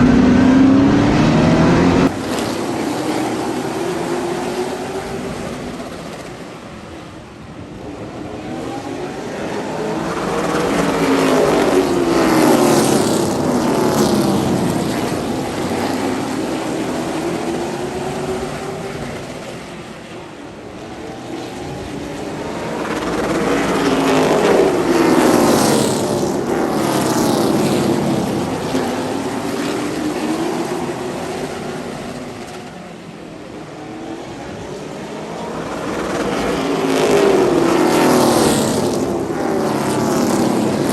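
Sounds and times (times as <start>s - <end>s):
race car engines passing: 0.0s - 40.9s.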